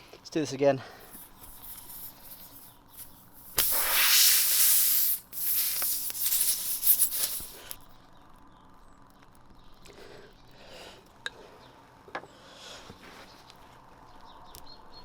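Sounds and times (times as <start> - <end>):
air hissing from a tyre: 1.0 - 7.8.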